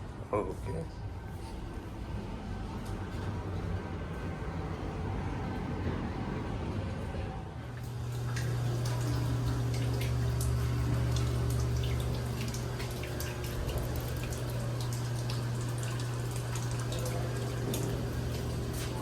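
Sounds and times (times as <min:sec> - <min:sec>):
low machine hum: 0:00.0 - 0:19.0
small irregular ticks and drips: 0:07.8 - 0:19.0.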